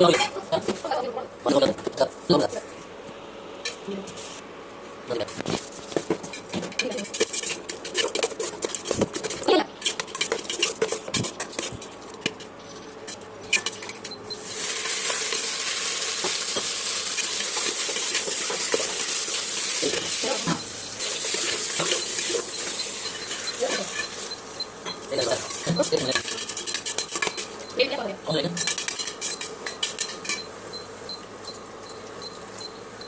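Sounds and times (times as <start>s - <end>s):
loud steady sizzle of frying: 0.0s - 33.0s
utensil scraping in a pan: 5.2s - 27.8s, 28.6s - 30.5s.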